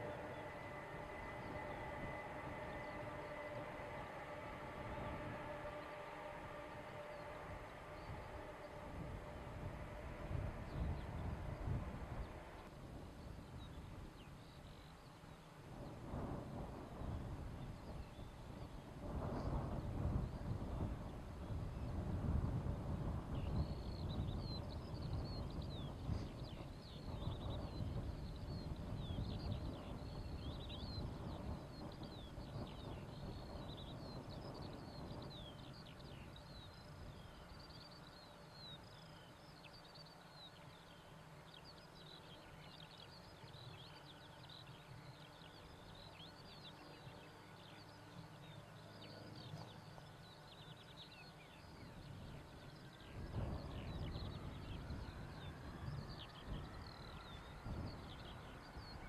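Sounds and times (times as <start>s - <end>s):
jet engine whine: 0.0s - 59.0s
low outdoor rumble: 0.0s - 59.0s
small birds chirping: 23.3s - 59.0s.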